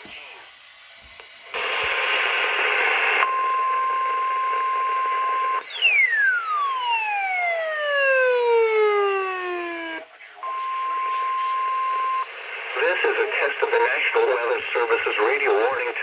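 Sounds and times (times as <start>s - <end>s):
steady warning alarm tone: 3.3s - 12.3s
falling tone sweep: 6.4s - 10.0s.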